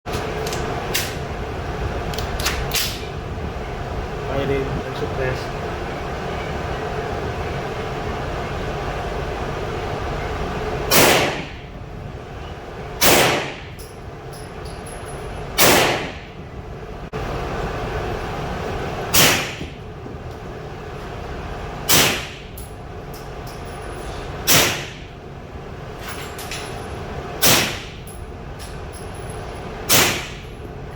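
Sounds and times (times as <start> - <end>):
steady background noise: 0.1 - 30.9
suppressed gunshots: 10.9 - 11.6, 13.0 - 13.7, 15.6 - 16.2.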